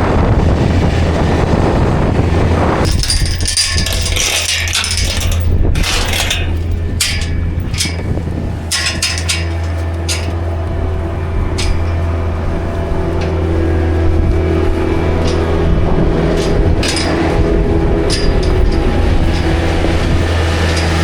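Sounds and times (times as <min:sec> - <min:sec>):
skid loader engine running: 0:00.0 - 0:21.0
metallic clanks and knocks: 0:02.8 - 0:12.1, 0:15.1 - 0:21.0.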